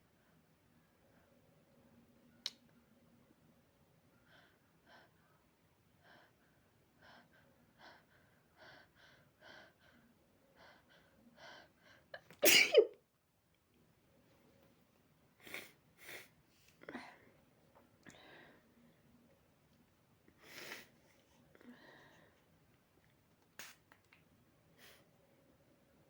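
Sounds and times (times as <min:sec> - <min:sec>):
person sneezing: 0:12.4 - 0:12.9.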